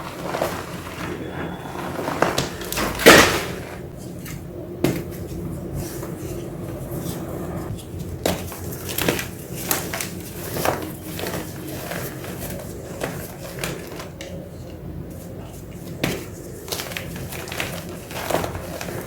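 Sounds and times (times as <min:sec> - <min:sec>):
low hum: 0:00.0 - 0:09.0.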